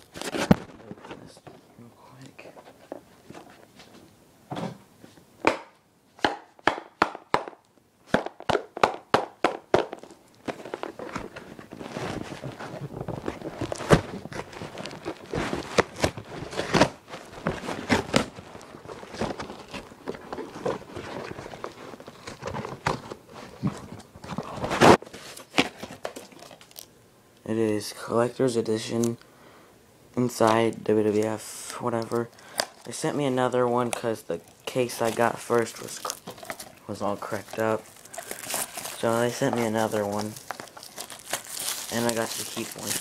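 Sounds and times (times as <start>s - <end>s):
packing material crinkling and rustling: 9.8s - 26.9s, 30.2s - 43.0s.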